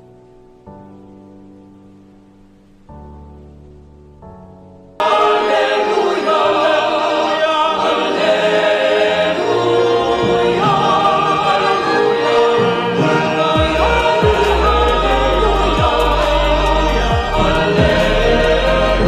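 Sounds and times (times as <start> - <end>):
instrumental accompaniment: 0.0 - 19.0
choir singing: 5.0 - 19.0.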